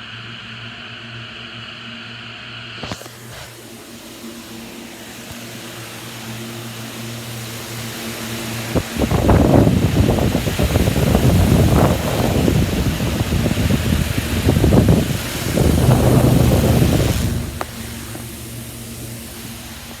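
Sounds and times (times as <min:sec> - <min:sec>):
machine hum: 0:00.0 - 0:20.0
loud uneven rumbling: 0:09.4 - 0:20.0.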